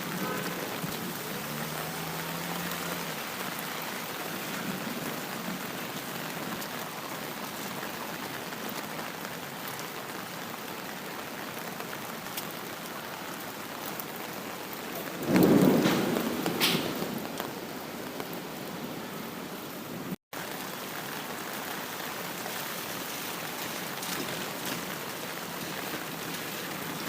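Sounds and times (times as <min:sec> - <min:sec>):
steady rain: 0:00.0 - 0:27.0
thunder crack: 0:15.1 - 0:17.5.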